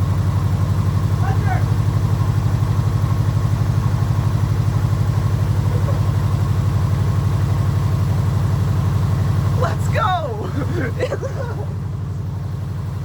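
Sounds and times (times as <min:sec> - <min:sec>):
car engine idling loudly: 0:00.0 - 0:13.0.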